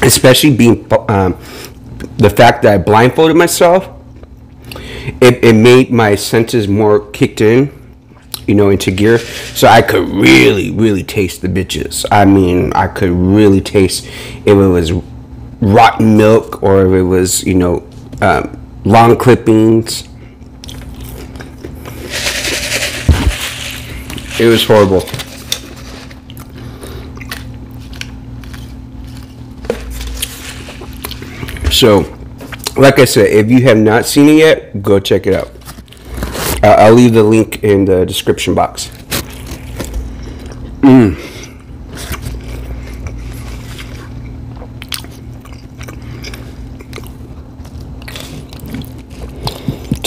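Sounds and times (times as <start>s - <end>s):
person chewing food: 20.4s - 22.4s, 25.5s - 31.6s, 41.4s - 50.0s.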